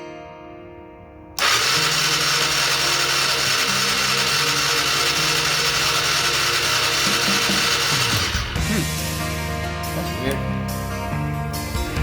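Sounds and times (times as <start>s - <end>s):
electric starter cranking engine: 1.4s - 9.1s.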